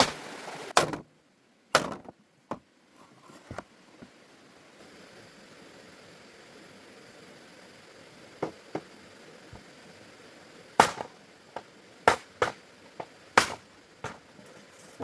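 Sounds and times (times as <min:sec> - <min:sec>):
sharp chopping strikes: 0:10.8 - 0:11.1, 0:12.1 - 0:12.6, 0:13.4 - 0:14.2.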